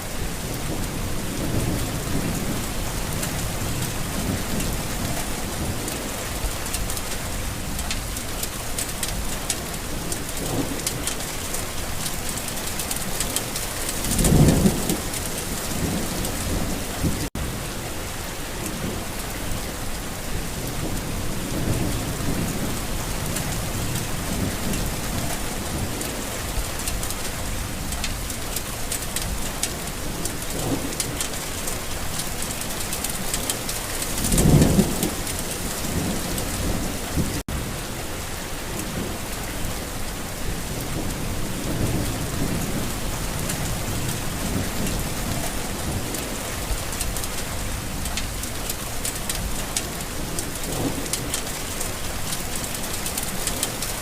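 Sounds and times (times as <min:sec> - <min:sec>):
steady rain falling: 0:00.0 - 0:54.0
thunder rumbling: 0:11.8 - 0:17.6, 0:20.1 - 0:38.1.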